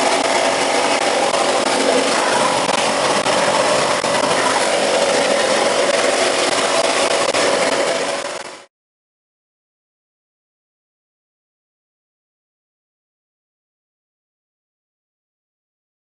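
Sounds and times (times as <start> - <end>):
wet blasting gun spraying: 0.0 - 8.7.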